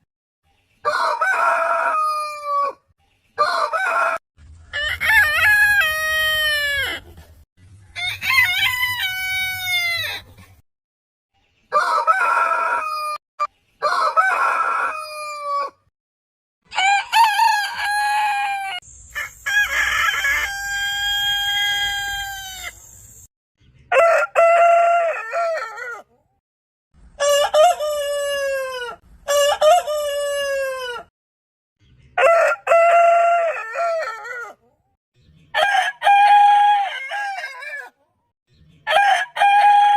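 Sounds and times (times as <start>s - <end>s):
roosters crowing: 0.8s - 2.8s, 3.4s - 7.1s, 7.9s - 10.3s, 11.7s - 13.2s, 13.8s - 15.8s, 16.7s - 23.0s, 23.9s - 26.1s, 27.2s - 31.1s, 32.2s - 34.6s, 35.5s - 38.0s, 38.8s - 39.9s.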